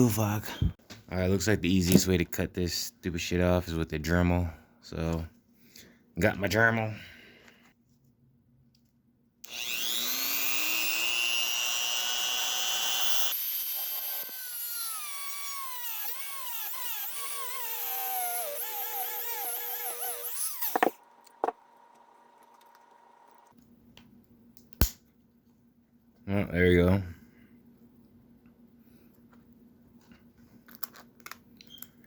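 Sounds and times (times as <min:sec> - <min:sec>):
rotary tool whining: 0:09.4 - 0:23.5.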